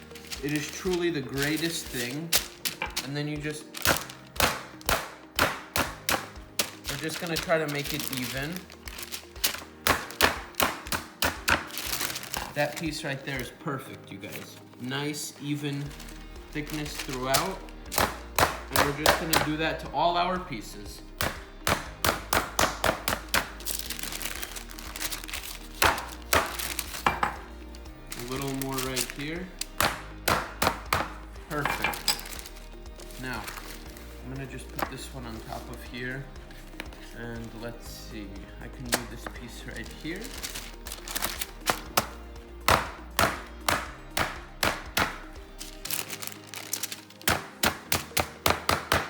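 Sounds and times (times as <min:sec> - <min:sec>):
paper crinkling: 0:00.0 - 0:19.6, 0:22.5 - 0:37.6, 0:38.8 - 0:42.9, 0:43.8 - 0:48.4
background music: 0:00.0 - 0:49.0
meat being pounded: 0:03.8 - 0:07.1, 0:09.4 - 0:12.5, 0:17.3 - 0:19.6, 0:21.2 - 0:24.2, 0:25.0 - 0:27.5, 0:29.8 - 0:32.4, 0:41.2 - 0:45.3, 0:47.2 - 0:49.0.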